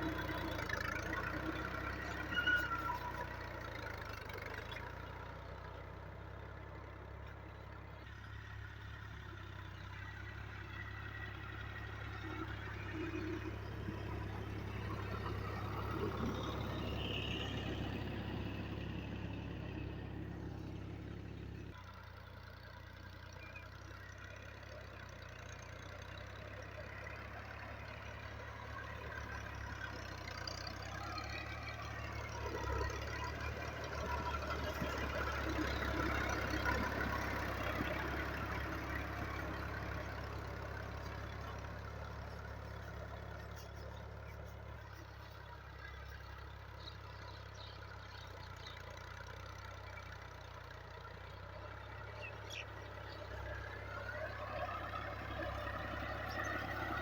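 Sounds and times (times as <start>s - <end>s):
tractor diesel engine running: 0.0s - 57.0s.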